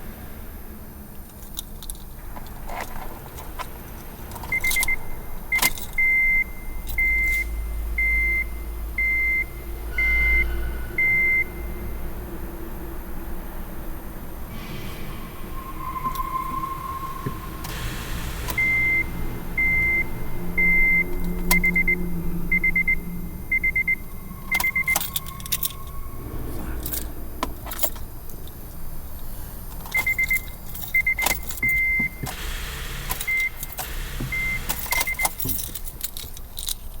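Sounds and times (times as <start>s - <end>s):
keys jangling: 1.3s - 7.7s, 24.3s - 37.0s
car warning chime beeping: 4.5s - 11.9s, 15.6s - 26.3s, 29.9s - 35.9s.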